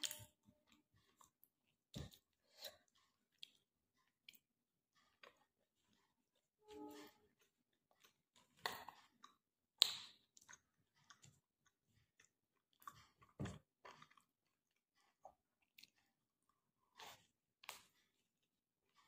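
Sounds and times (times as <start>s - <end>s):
person chewing food: 0.0s - 19.0s.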